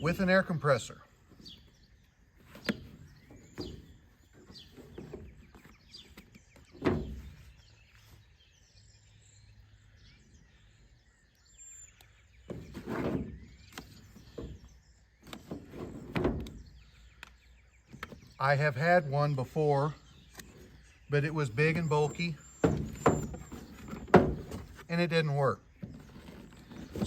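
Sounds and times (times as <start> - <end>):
birds chirping: 0.0 - 27.0
handling knocks and rustles: 1.2 - 8.2, 12.4 - 16.9, 21.6 - 24.9, 25.7 - 27.0.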